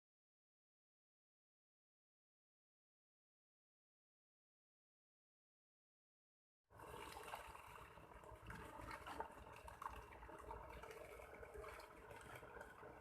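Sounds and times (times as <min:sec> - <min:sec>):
water splashing and trickling: 0:06.7 - 0:13.0.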